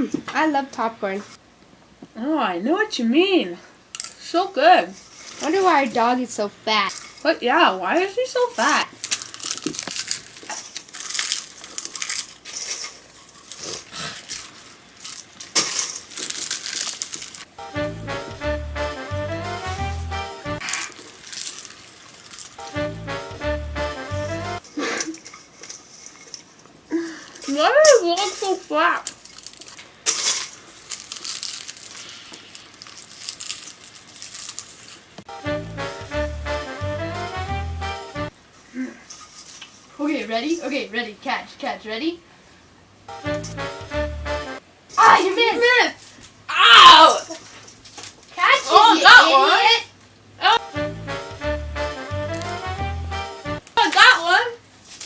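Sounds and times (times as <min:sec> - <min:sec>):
popcorn crunching and rustling: 0:03.9 - 0:04.3, 0:04.9 - 0:36.4, 0:47.2 - 0:49.0, 0:51.8 - 0:52.9, 0:54.7 - 0:55.0.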